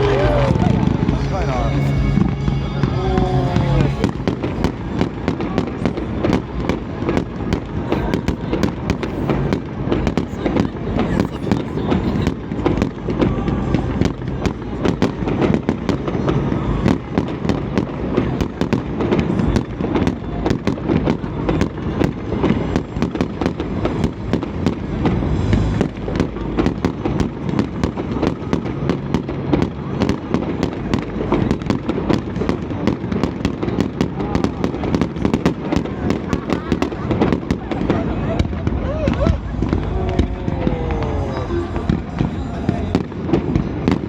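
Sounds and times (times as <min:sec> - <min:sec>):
low rumble: 0:00.0 - 0:06.2, 0:23.6 - 0:27.8, 0:37.6 - 0:44.0
fireworks bangs and crackles: 0:00.0 - 0:44.0.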